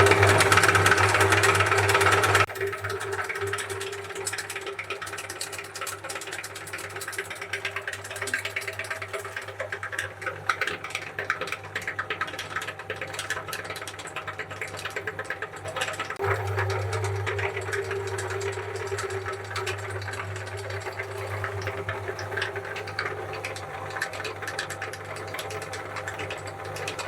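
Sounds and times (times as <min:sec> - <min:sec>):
electric meat grinder humming: 0:00.0 - 0:05.0, 0:16.2 - 0:27.0
crackle of grinding cones: 0:00.0 - 0:27.0.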